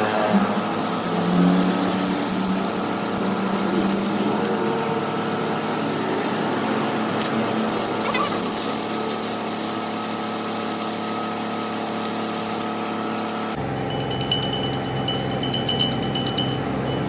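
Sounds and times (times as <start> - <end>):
machine motor hum with hiss: 0.0 - 14.2.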